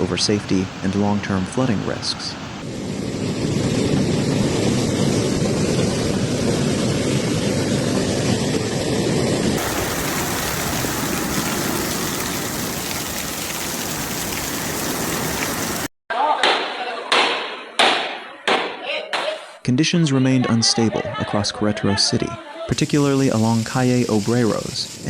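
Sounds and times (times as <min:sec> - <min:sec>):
rushing floodwater: 0:00.0 - 0:02.6, 0:09.6 - 0:15.9
heavy rain: 0:00.0 - 0:02.7, 0:09.6 - 0:15.9.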